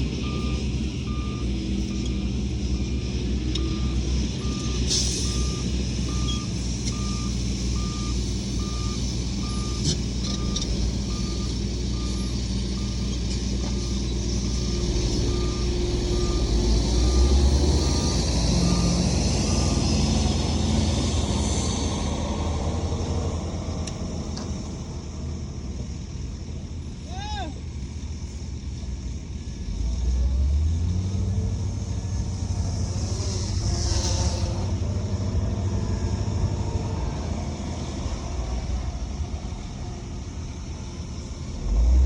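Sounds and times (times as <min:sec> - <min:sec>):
diesel engine droning: 0:00.0 - 0:42.0
reverse alarm beeping: 0:00.2 - 0:02.2, 0:03.6 - 0:20.0.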